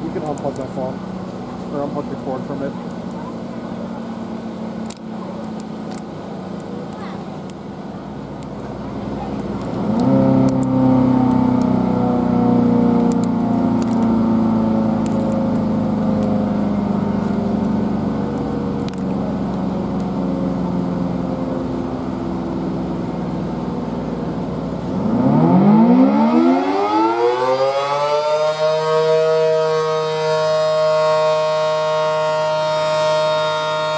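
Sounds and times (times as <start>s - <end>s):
steady mechanical hum: 0.0s - 33.9s
warning siren wailing: 25.0s - 33.9s.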